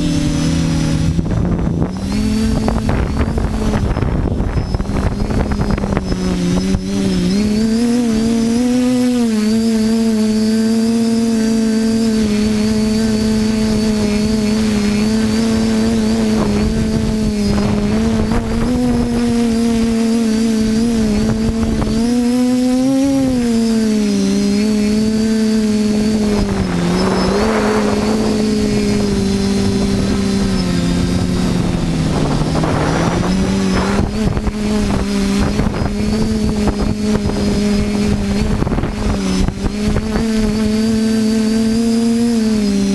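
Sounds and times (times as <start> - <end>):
drone propellers droning: 0.0 - 42.9
rush of air: 25.9 - 35.8.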